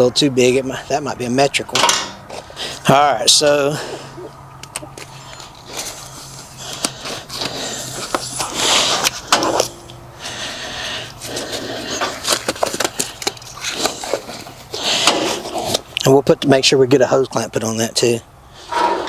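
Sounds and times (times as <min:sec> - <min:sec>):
low steady hum: 0:00.0 - 0:19.0
metal wrenches clinking and scraping: 0:01.7 - 0:02.3, 0:05.2 - 0:10.0, 0:11.5 - 0:15.9, 0:18.7 - 0:19.0.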